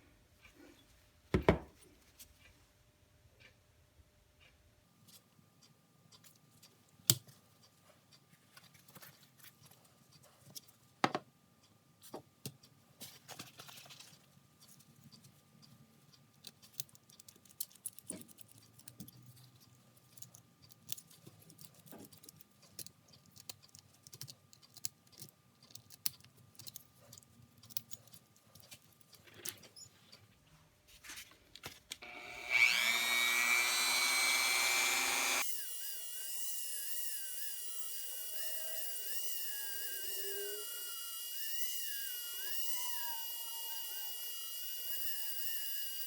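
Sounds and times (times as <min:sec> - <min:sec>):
rotary tool whining: 0:32.0 - 0:46.0.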